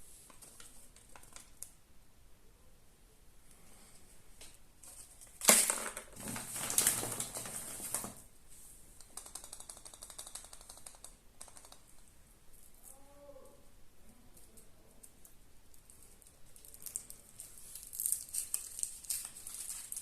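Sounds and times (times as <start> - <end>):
foil wrapper crinkling: 4.8 - 8.2, 15.8 - 20.0
small dry clicks: 9.0 - 13.0.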